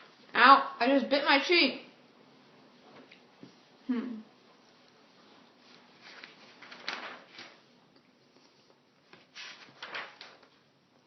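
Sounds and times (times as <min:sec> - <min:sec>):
rustling and handling noises: 0:04.5 - 0:10.8.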